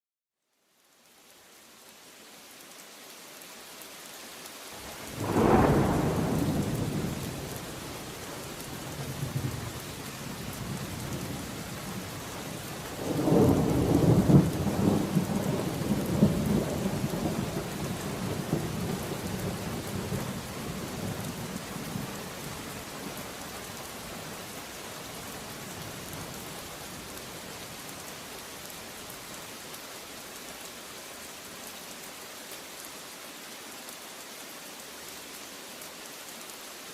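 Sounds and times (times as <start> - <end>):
heavy rain: 0.6 - 36.9
thunder rumbling: 4.9 - 12.3, 12.9 - 22.2.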